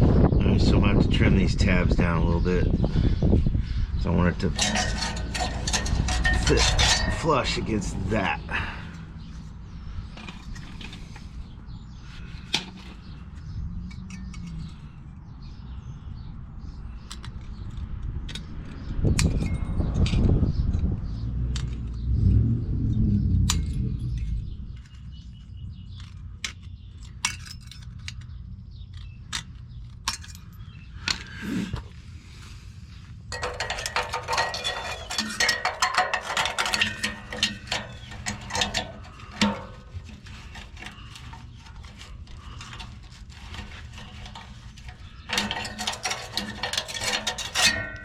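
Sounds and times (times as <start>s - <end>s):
sheet metal clicks and clinks: 4.5s - 7.6s, 26.0s - 31.3s, 33.3s - 48.0s
low rumble: 19.6s - 24.9s.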